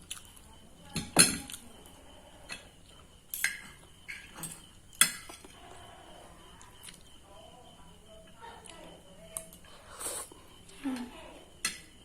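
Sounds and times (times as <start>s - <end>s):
cutlery clinking on a plate: 3.3s - 5.5s.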